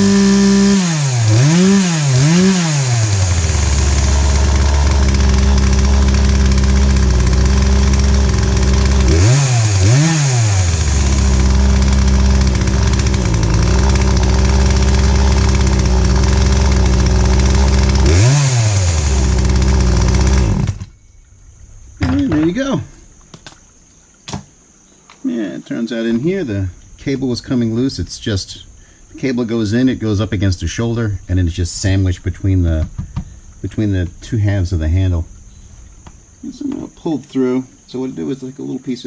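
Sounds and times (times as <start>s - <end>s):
chainsaw engine revving: 0.0s - 21.0s.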